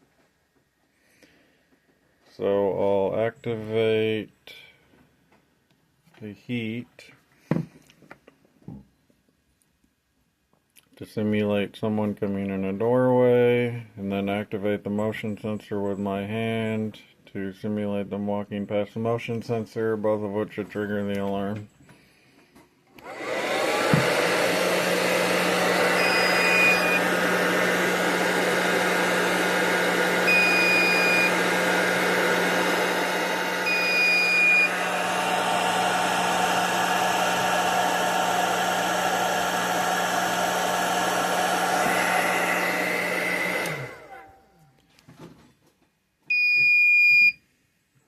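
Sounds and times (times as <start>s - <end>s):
thump: 7.5s - 7.8s
hairdryer running: 23.0s - 44.3s
high alarm beeps: 30.3s - 31.3s, 33.7s - 34.7s.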